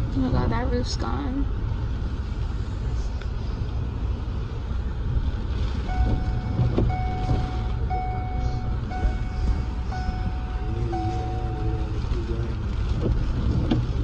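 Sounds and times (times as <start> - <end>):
low vehicle rumble: 0.0 - 14.0
electronic warning beeps: 5.9 - 12.0.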